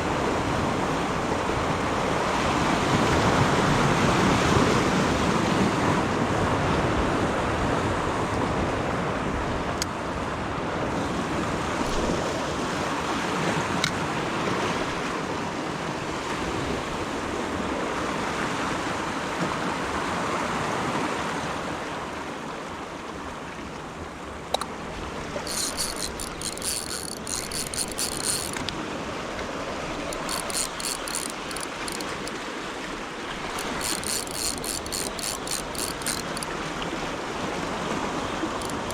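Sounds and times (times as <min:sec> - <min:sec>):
wind: 0:00.0 - 0:38.9
fishing reel ratcheting clicks: 0:25.5 - 0:28.8, 0:30.0 - 0:32.4, 0:33.4 - 0:36.6, 0:38.5 - 0:38.9.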